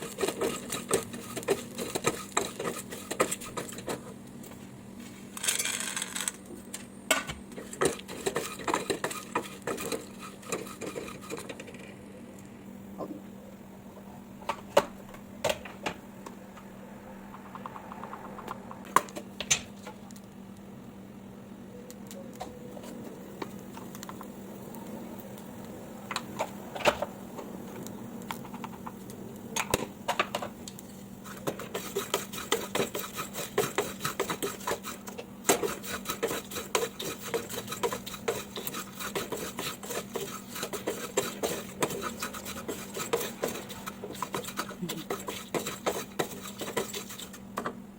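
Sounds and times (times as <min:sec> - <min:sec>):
steady low hum: 0:00.0 - 0:47.9
metal spoon scraping a pan: 0:07.6 - 0:11.6, 0:31.2 - 0:47.4.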